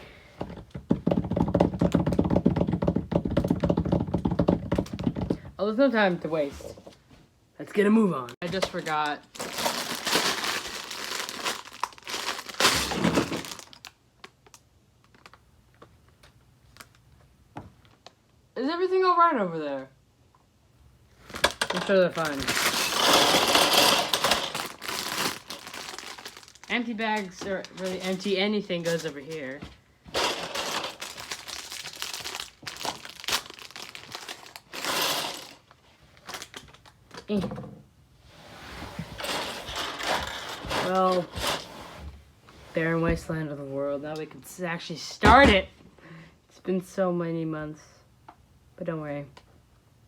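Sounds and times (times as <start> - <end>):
plastic bag rustling: 8.4 - 15.4, 21.2 - 37.1, 38.7 - 41.8.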